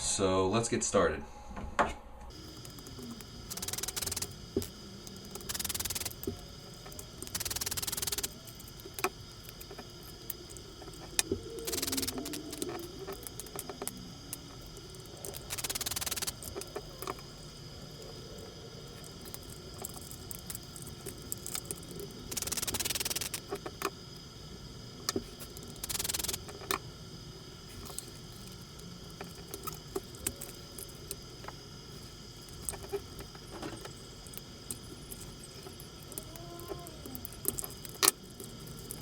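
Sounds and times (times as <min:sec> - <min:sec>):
small clicks and taps of parts: 0:02.3 - 0:17.5, 0:18.8 - 0:24.2, 0:25.0 - 0:26.9, 0:27.7 - 0:39.0.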